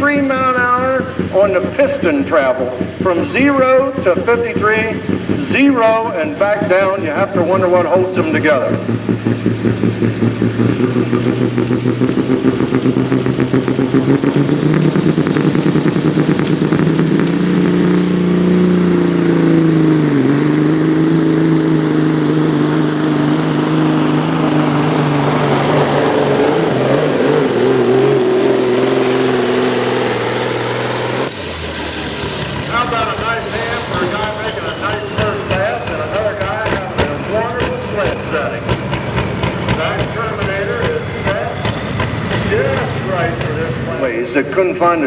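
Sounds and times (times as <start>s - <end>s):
diesel truck engine under load: 0.0s - 45.0s
high whistle: 17.0s - 19.4s, 33.5s - 36.2s.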